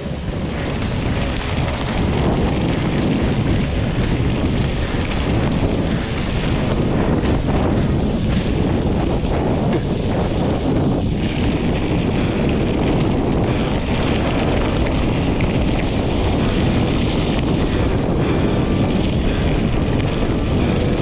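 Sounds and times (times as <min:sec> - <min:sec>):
rain falling: 0:00.0 - 0:08.8
wind rushing over microphone: 0:00.0 - 0:21.0.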